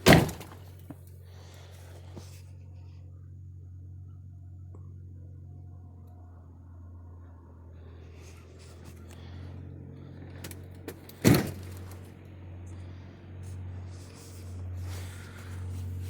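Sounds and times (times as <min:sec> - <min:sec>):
vehicle door shutting: 0:00.0 - 0:00.9, 0:10.4 - 0:12.1
steady low hum: 0:00.0 - 0:16.0.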